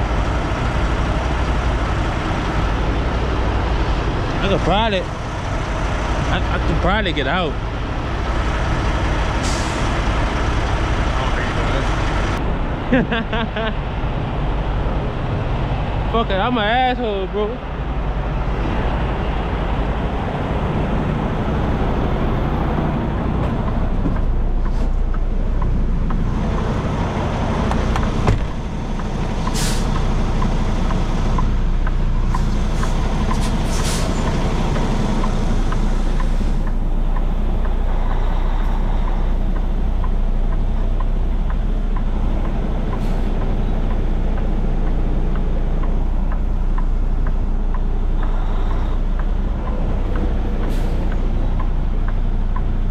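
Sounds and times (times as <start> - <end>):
diesel truck engine running: 0.0 - 52.9
air brake hisses: 29.5 - 29.9, 32.8 - 34.2.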